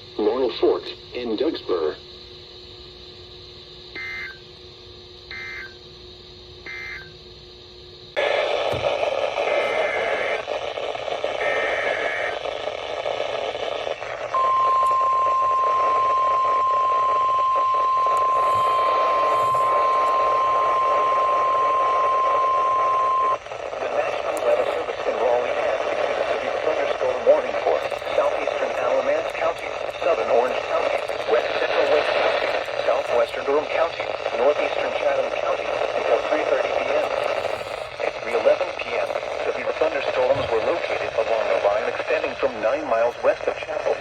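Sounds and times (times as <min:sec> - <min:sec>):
static-filled radio feed: 0:00.0 - 0:02.0, 0:08.1 - 0:44.0
faint steady hum: 0:00.0 - 0:44.0
steady warning alarm tone: 0:03.9 - 0:04.5, 0:05.2 - 0:05.9, 0:06.6 - 0:07.2, 0:13.6 - 0:23.7
beeping data bursts: 0:14.3 - 0:23.4.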